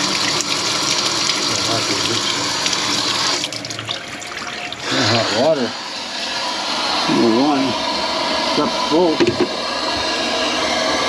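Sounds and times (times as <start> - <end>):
faucet running into sink: 0.0 - 6.4.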